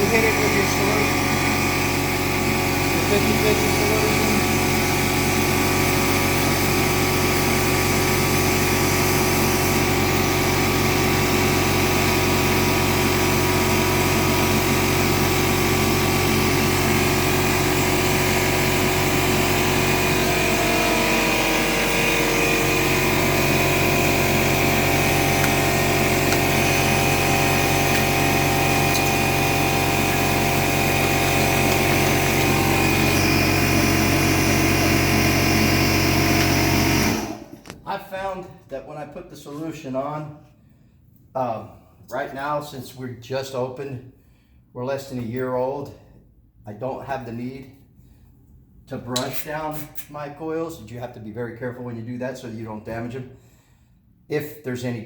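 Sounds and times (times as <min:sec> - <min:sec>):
steady machine hum: 0:00.0 - 0:37.8.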